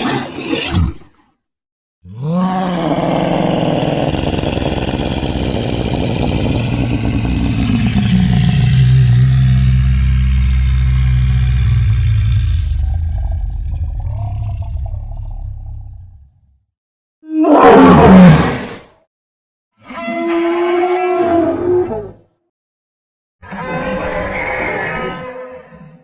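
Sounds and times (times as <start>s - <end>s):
cartoon dinosaur roar: 0.0s - 1.2s, 2.0s - 16.4s, 17.3s - 18.9s.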